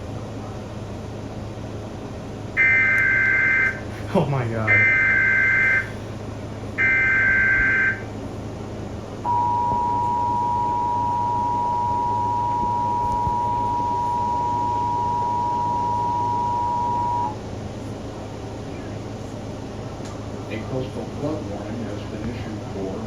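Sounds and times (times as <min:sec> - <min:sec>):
low background hum: 0:00.0 - 0:23.0
two-tone attention signal: 0:02.6 - 0:03.8, 0:04.7 - 0:05.9, 0:06.8 - 0:08.0, 0:09.3 - 0:17.4
burst of data tones: 0:06.8 - 0:08.0, 0:09.3 - 0:17.4.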